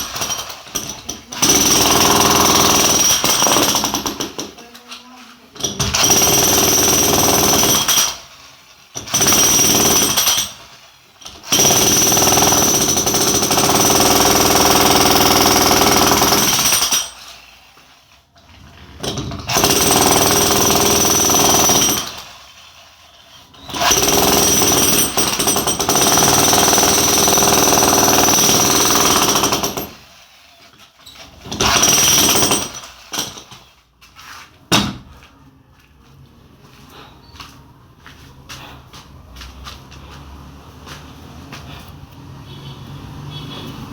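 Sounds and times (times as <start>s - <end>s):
jackhammer chipping concrete: 0.0s - 4.6s, 5.6s - 8.2s, 9.0s - 10.6s, 11.3s - 17.2s, 19.0s - 22.3s, 23.6s - 30.0s, 31.4s - 33.4s.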